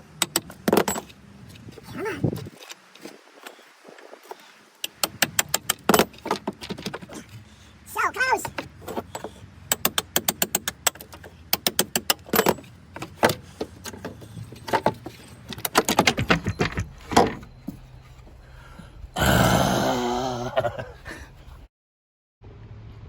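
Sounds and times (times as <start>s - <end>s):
chisel tapping metal: 8.4s - 17.6s.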